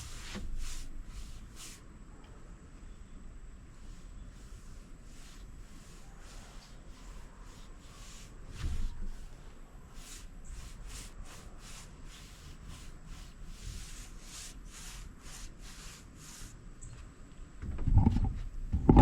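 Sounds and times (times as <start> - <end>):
paintbrush swishing on wood: 0.0 - 1.8, 3.8 - 16.6.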